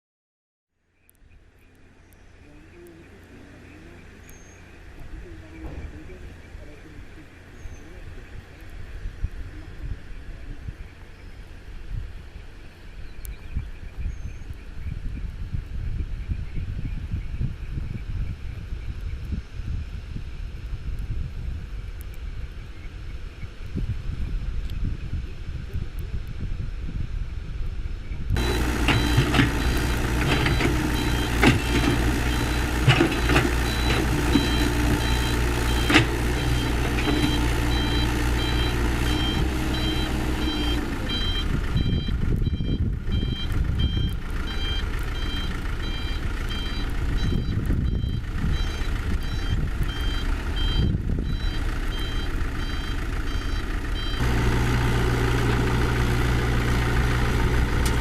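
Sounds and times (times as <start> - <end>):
diesel engine running: 1.4 - 11.6, 28.4 - 58.0
reversing alarm beeping: 28.4 - 57.9.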